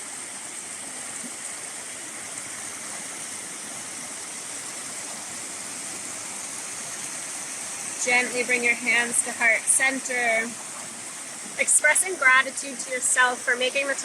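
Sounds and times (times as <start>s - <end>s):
stream rushing over rocks: 0.0s - 14.0s.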